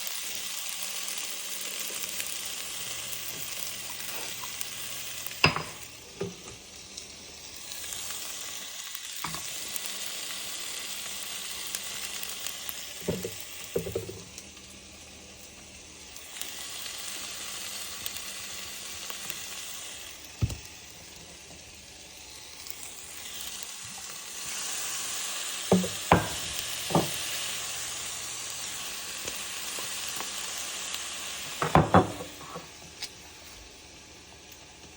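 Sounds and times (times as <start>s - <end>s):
food sizzling in a pan: 0.0s - 34.9s
utensil striking a pan: 5.4s - 6.3s, 25.7s - 27.2s, 31.6s - 32.7s.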